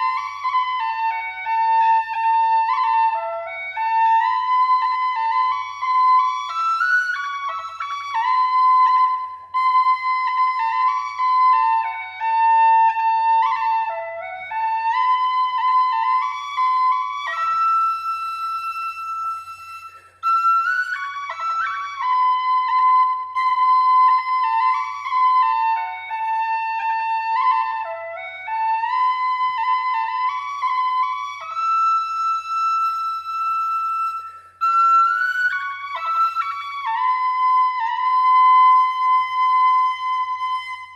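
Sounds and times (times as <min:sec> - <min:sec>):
solo flute melody: 0:00.0 - 0:40.9.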